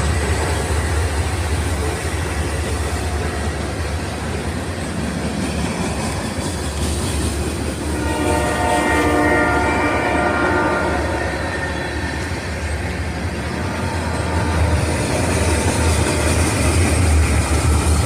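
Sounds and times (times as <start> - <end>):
train wheels clattering: 0.0 - 9.3, 11.6 - 18.0
locomotive horn: 7.9 - 12.2, 13.6 - 15.1.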